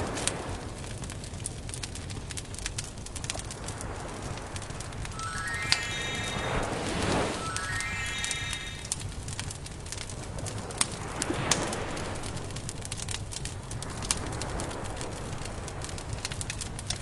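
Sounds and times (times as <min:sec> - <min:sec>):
campfire crackling and popping: 0:00.1 - 0:05.1, 0:10.8 - 0:17.0.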